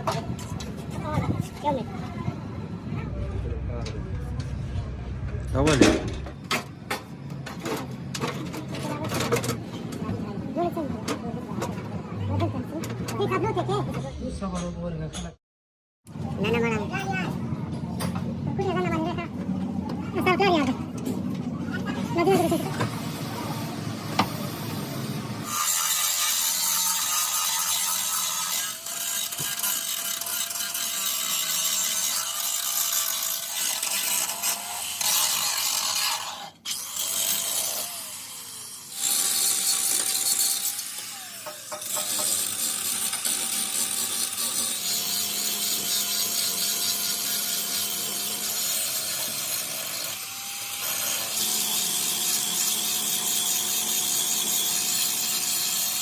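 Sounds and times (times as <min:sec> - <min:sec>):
power tool grinding: 0:24.3 - 0:56.0.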